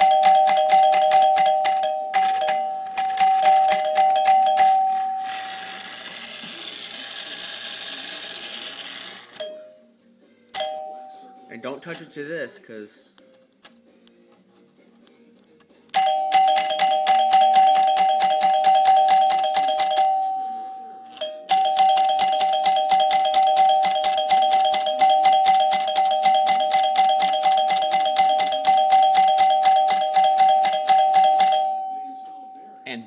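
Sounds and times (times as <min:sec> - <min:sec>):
electric doorbell ringing: 0:00.0 - 0:06.3, 0:09.3 - 0:09.8, 0:10.6 - 0:11.7, 0:16.0 - 0:32.8.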